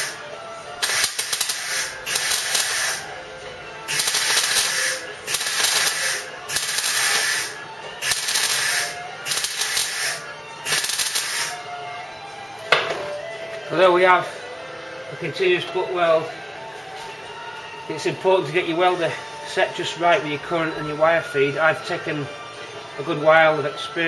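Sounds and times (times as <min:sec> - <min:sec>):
welding arc crackling: 0:00.8 - 0:03.1, 0:03.9 - 0:11.6.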